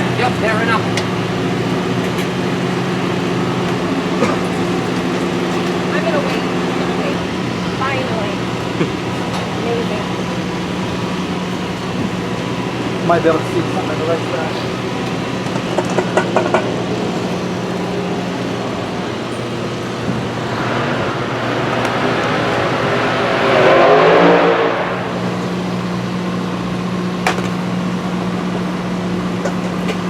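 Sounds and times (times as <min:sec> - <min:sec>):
low engine hum: 0:00.0 - 0:30.0
vehicle driving past: 0:17.9 - 0:26.2.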